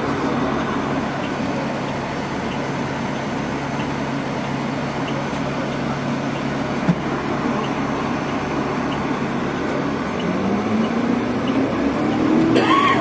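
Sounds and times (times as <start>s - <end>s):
engine running hum: 0.0s - 13.0s.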